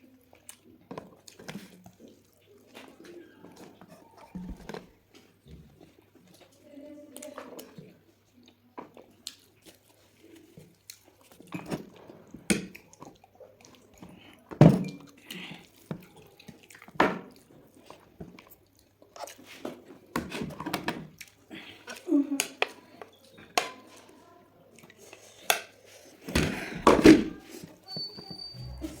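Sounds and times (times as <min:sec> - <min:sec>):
person chewing chicken: 0:08.1 - 0:14.3, 0:15.0 - 0:19.6.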